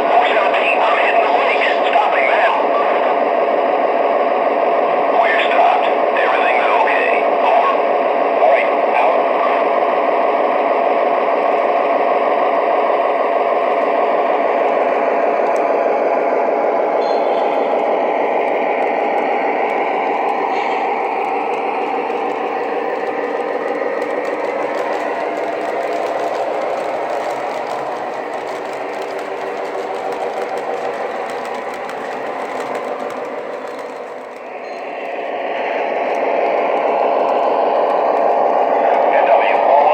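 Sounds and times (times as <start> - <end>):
model train diesel engine sound: 0.0 - 39.9
motor and wheel noise: 11.1 - 39.0.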